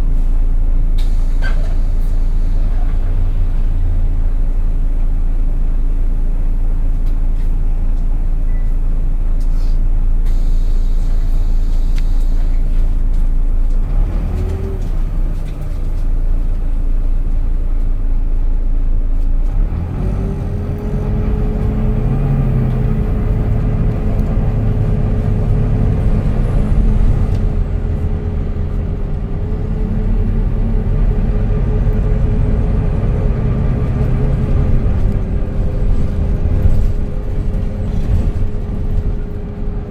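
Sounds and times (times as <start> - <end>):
bus diesel engine drone: 0.0 - 39.9
steady engine whine: 19.4 - 39.9.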